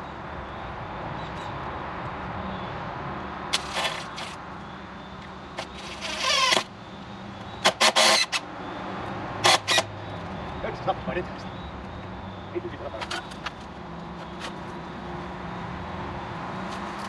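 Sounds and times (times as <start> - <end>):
shovel scraping dirt and stone: 3.5 - 4.4.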